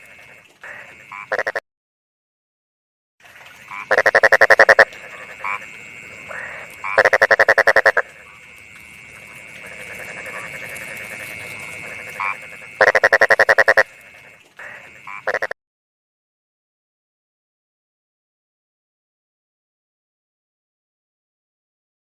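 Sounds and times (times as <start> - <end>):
frog croaking: 0.0 - 1.6, 3.3 - 15.6.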